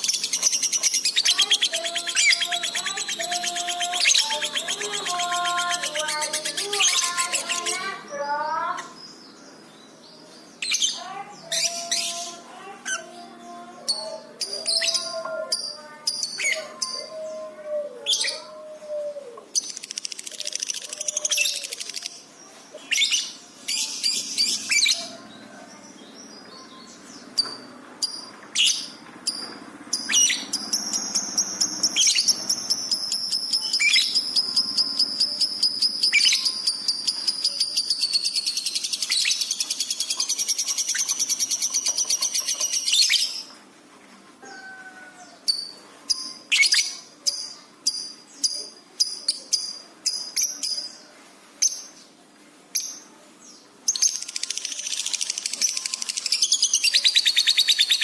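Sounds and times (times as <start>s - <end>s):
lovebird chirping and trilling: 0.0s - 9.4s, 10.6s - 17.5s, 22.8s - 25.2s, 26.2s - 43.5s, 45.4s - 51.0s, 53.8s - 58.0s.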